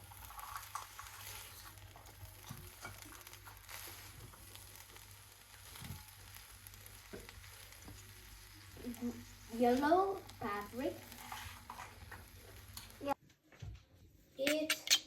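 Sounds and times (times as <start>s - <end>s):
food sizzling in a pan: 0.0s - 13.2s.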